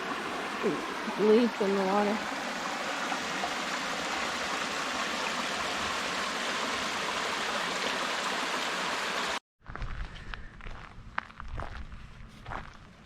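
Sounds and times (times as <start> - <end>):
creek water rushing: 0.0 - 9.4.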